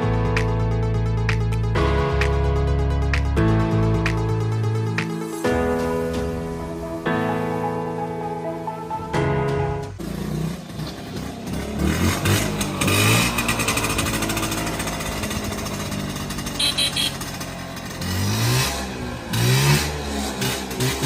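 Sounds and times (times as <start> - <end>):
scooter engine revving: 8.9 - 21.0.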